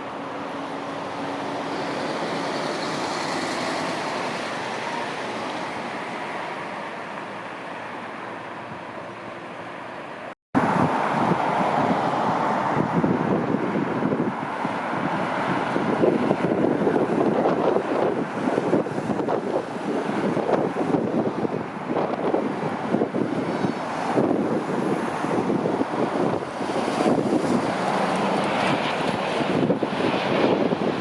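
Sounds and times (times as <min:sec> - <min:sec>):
jet engines roaring: 0:00.0 - 0:10.0, 0:10.6 - 0:31.0
wind buffeting microphone: 0:10.6 - 0:31.0.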